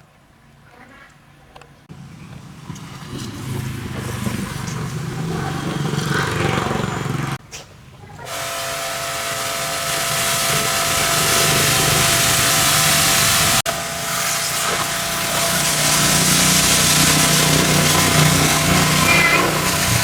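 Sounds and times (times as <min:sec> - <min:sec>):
pressure washer spraying: 0:08.3 - 0:20.0.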